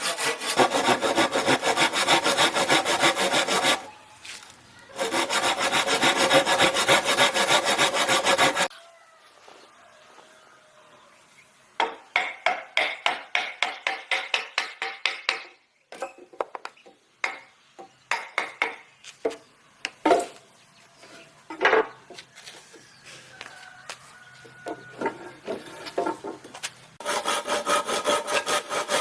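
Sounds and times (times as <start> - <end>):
hand tool strokes on wood: 0.0 - 8.7.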